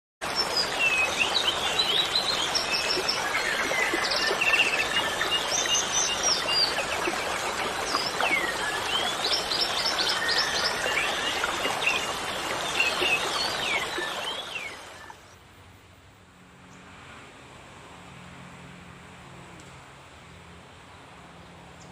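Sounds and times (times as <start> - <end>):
birds chirping and trilling: 0.3 - 15.4.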